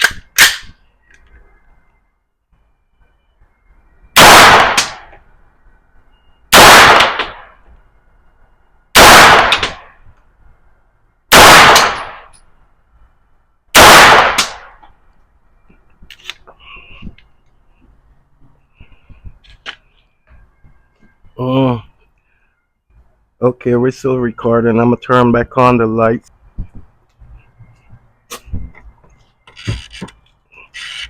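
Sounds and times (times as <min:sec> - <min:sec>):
gunshots: 0:04.2 - 0:05.1, 0:06.5 - 0:07.5, 0:09.0 - 0:09.9, 0:11.3 - 0:12.3, 0:13.8 - 0:14.8.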